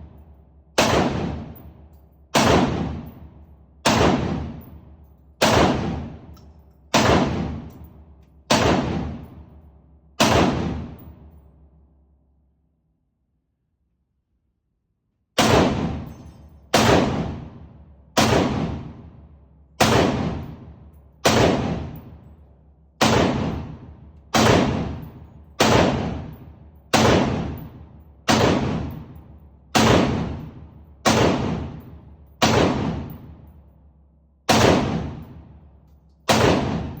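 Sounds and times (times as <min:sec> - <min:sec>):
gunshots with echo: 0:00.8 - 0:01.7, 0:02.4 - 0:04.8, 0:05.4 - 0:06.3, 0:06.9 - 0:07.8, 0:08.5 - 0:09.5, 0:10.2 - 0:11.2, 0:15.4 - 0:19.2, 0:19.8 - 0:22.3, 0:23.0 - 0:29.2, 0:29.8 - 0:33.4, 0:34.5 - 0:35.4, 0:36.3 - 0:37.0.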